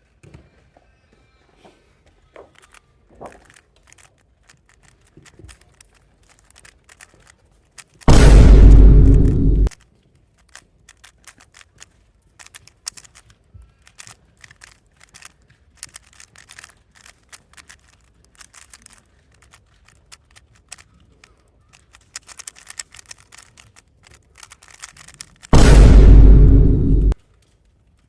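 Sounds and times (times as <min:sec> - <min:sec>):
plastic puzzle cube clicking: 0:02.5 - 0:08.1, 0:09.7 - 0:25.6.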